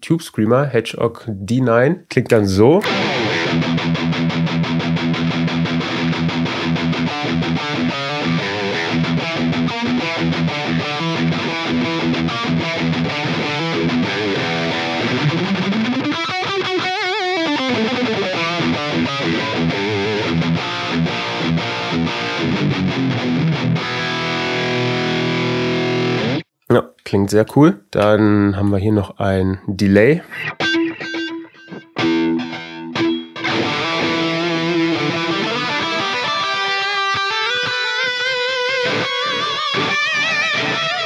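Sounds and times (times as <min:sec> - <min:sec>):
heavily distorted electric guitar riffing: 0:02.8 - 0:26.4, 0:30.2 - 0:41.0.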